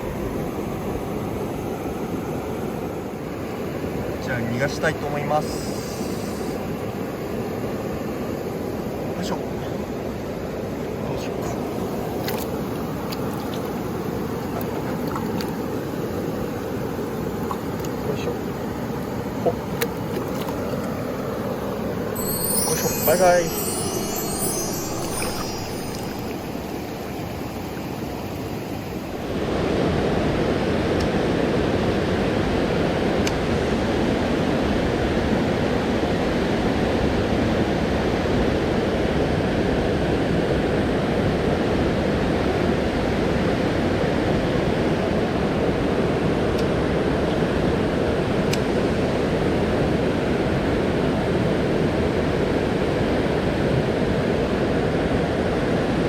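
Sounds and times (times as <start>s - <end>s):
river water rushing: 9.5s - 34.8s.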